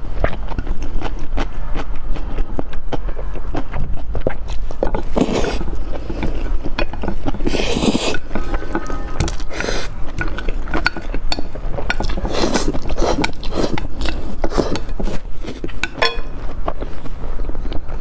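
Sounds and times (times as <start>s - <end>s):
person eating: 0.0s - 18.0s
cutlery clinking against dishes: 15.8s - 16.4s.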